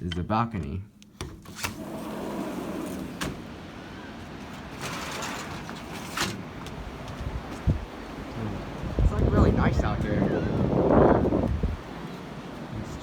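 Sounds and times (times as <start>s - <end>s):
sliding door opening: 1.4s - 6.7s
steady outdoor noise: 1.8s - 13.0s.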